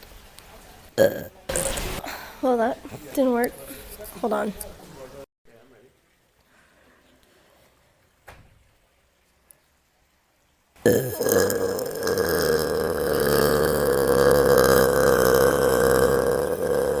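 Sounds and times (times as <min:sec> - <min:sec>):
girl burping: 0:01.0 - 0:01.8, 0:10.8 - 0:17.0.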